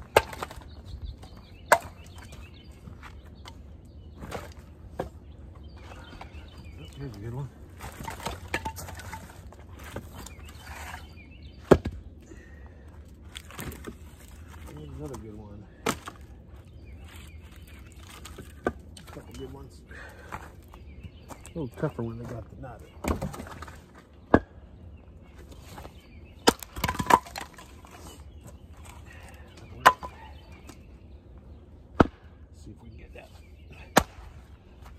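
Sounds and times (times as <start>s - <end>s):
axe splitting firewood: 0.0s - 2.4s, 7.0s - 12.0s, 13.3s - 16.3s, 23.0s - 24.6s, 25.7s - 28.2s, 28.8s - 30.4s, 31.9s - 32.4s, 33.8s - 34.5s
wood cracking and splintering: 26.4s - 28.0s.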